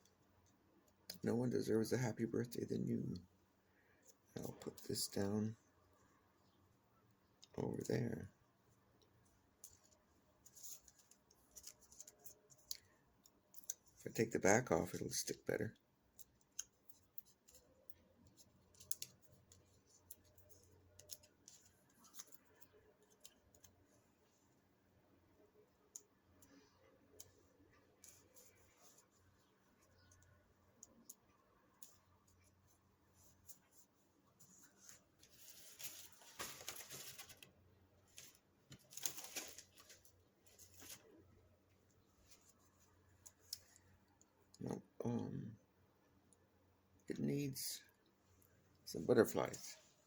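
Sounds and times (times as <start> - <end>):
paper rustling on a desk: 33.2 - 41.2.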